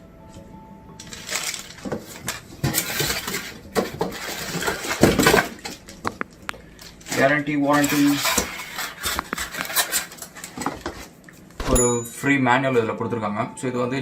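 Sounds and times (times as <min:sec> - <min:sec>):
packaging rustling: 0:01.0 - 0:11.2
hard items clattering: 0:01.0 - 0:12.2.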